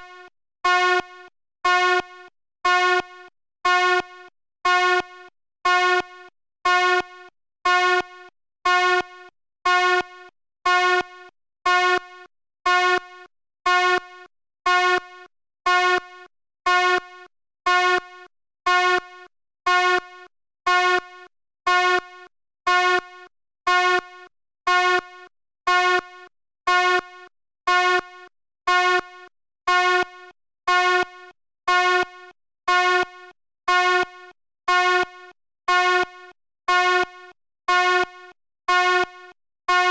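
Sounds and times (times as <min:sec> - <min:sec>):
fire alarm horn blasts: 0:00.0 - 0:39.9.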